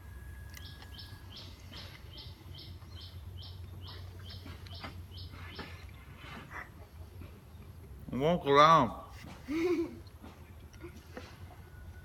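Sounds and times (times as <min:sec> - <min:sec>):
low steady hum: 0:00.0 - 0:12.0
bird chirping: 0:00.4 - 0:06.1.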